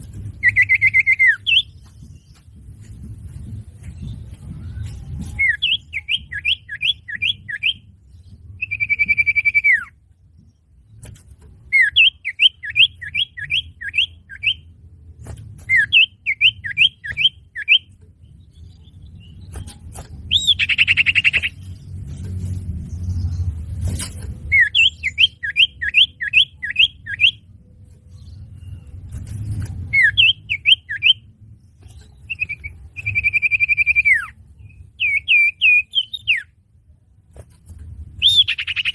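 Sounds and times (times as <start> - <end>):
low rumble: 0.0 - 6.0, 18.0 - 25.4
bird song whistles: 0.3 - 2.4, 3.9 - 10.0, 11.7 - 14.7, 15.6 - 21.6, 24.4 - 27.5, 29.9 - 31.3, 31.9 - 36.6, 38.2 - 38.9.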